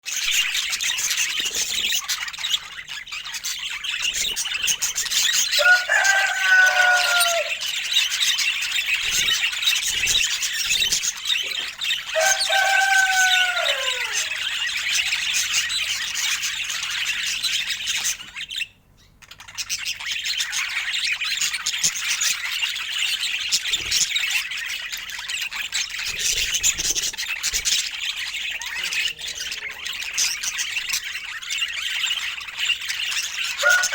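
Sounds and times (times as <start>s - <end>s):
budgerigars chattering: 0.1s - 33.9s
low falling bird calls: 0.2s - 18.6s.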